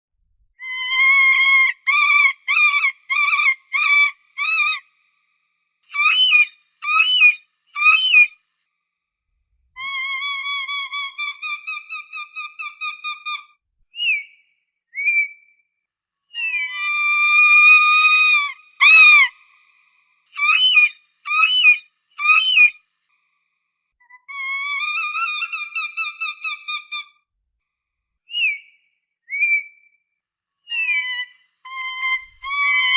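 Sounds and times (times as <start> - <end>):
falcon calling: 5.9 - 8.3, 16.4 - 19.7, 20.4 - 22.7, 24.3 - 27.0, 30.7 - 32.9.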